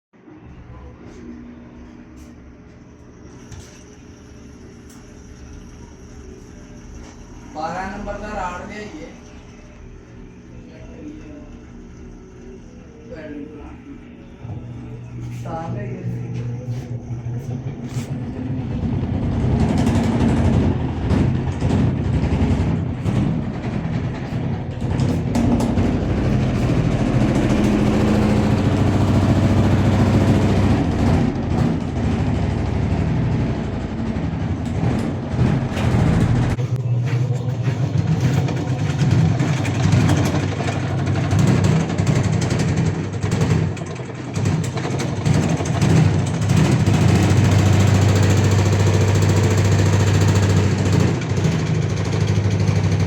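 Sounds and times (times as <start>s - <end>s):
washing machine humming: 0.2s - 53.0s
vibrating tub rattle: 18.3s - 53.0s.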